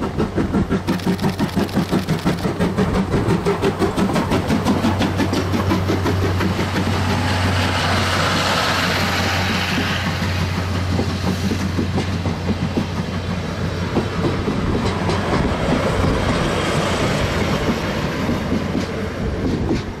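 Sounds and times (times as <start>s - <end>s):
train low hum: 0.0s - 20.0s
train wheels clattering over rail joints: 0.0s - 20.0s.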